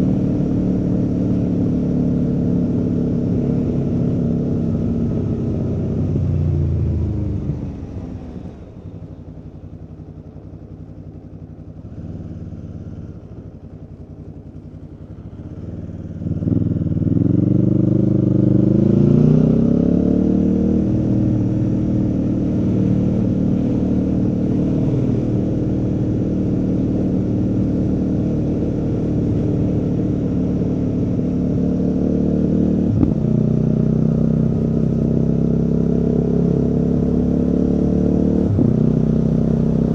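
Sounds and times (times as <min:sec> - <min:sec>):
motorcycle engine: 0:00.0 - 0:39.9.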